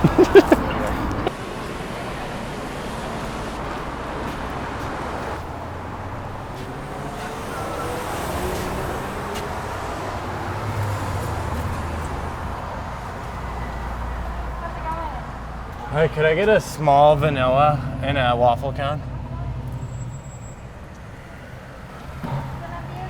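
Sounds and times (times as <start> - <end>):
road traffic rumble: 0.0 - 23.0.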